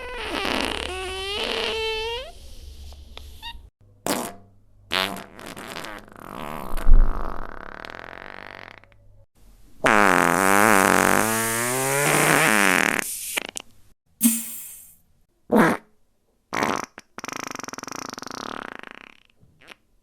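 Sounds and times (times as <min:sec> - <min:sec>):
fart sound effects: 0:00.0 - 0:02.3, 0:04.1 - 0:09.0, 0:09.8 - 0:13.5, 0:14.2 - 0:14.9, 0:16.5 - 0:19.8.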